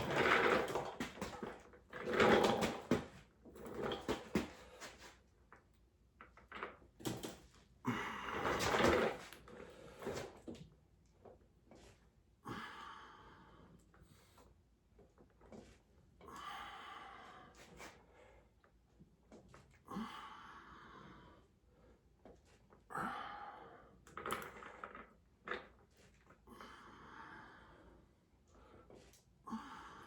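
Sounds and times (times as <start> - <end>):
man breathing hard: 7.9 - 8.8, 12.4 - 14.4, 16.3 - 18.6, 19.9 - 22.1, 22.9 - 24.0, 26.5 - 30.0.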